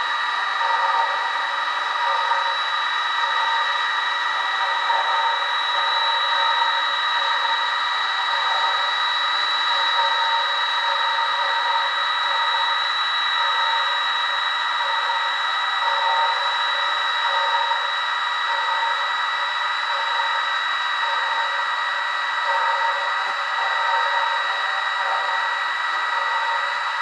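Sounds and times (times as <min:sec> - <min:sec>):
small electric motor whine: 0:00.0 - 0:27.0.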